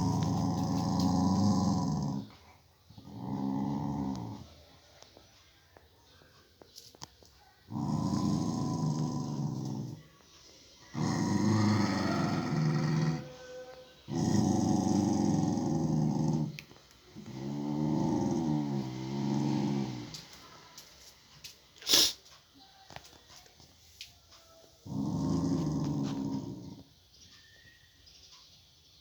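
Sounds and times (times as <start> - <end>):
dog growling: 0.0 - 4.7, 7.7 - 10.1, 10.8 - 20.2, 24.8 - 26.9.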